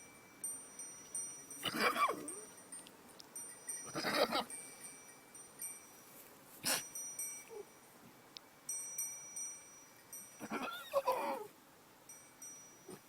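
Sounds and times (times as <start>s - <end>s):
high ringing tones: 0.0s - 11.2s, 12.1s - 13.0s
animal wavering call: 10.4s - 11.5s.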